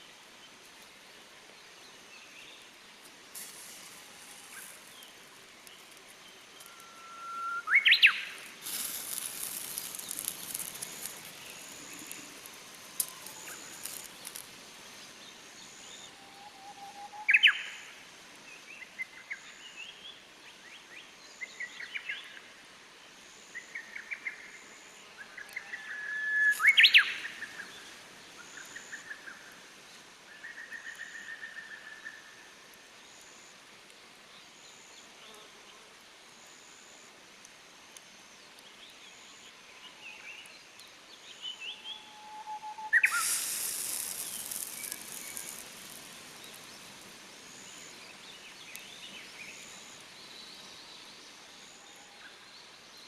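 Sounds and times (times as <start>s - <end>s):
crackling: 3.0s - 7.0s, 7.6s - 15.2s, 26.5s - 29.0s, 42.9s - 50.1s
bush warbler whistling song: 6.6s - 12.3s, 15.6s - 17.8s, 25.4s - 29.4s, 41.2s - 46.8s
small birds chirping and trilling: 7.8s - 16.1s, 42.9s - 51.4s.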